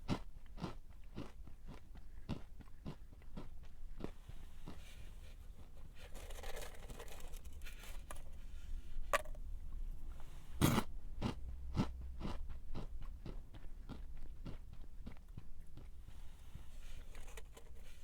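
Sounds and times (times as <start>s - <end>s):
chewing crunches: 10.6s - 18.0s.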